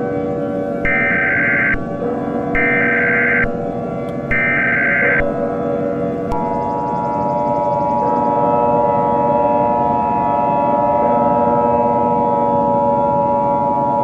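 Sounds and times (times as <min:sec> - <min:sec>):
low droning background: 0:00.0 - 0:14.0
two-tone alert signal: 0:00.8 - 0:01.8, 0:02.5 - 0:03.6, 0:04.3 - 0:05.4.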